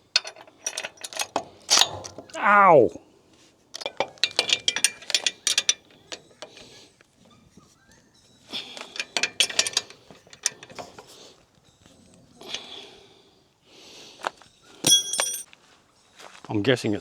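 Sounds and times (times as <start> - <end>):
metal clinks: 0.0 - 2.4, 3.8 - 6.8, 8.6 - 11.2, 14.8 - 15.5
ratchet spanner clicking: 0.0 - 2.4, 3.8 - 6.6, 9.0 - 11.0.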